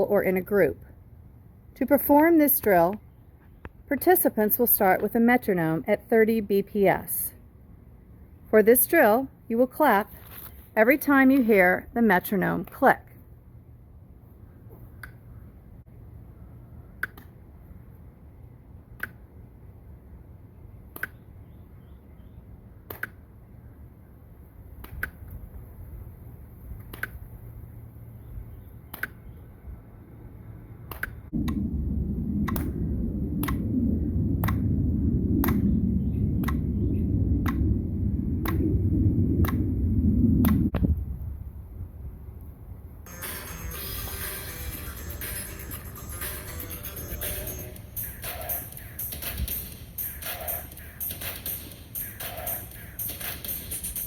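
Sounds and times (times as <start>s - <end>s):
loud low rumble: 31.3s - 41.1s, 43.1s - 54.0s.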